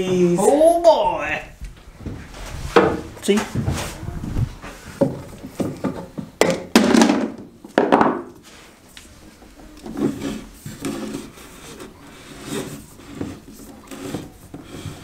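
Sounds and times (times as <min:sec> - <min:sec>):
knocks on wood: 0:05.0 - 0:08.3.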